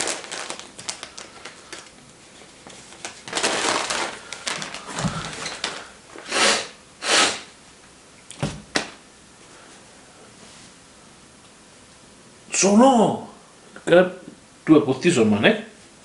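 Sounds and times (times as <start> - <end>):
gift wrapping crinkling: 0.0 - 6.2.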